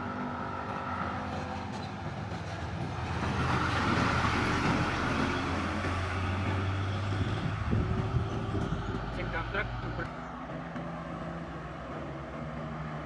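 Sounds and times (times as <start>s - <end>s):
heavy vehicle engine passing: 0.0s - 13.0s.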